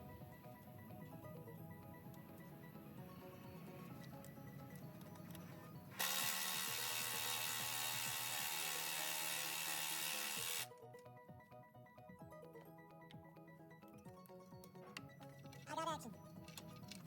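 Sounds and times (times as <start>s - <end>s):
background music: 0.0s - 17.0s
power tool running: 5.9s - 10.7s.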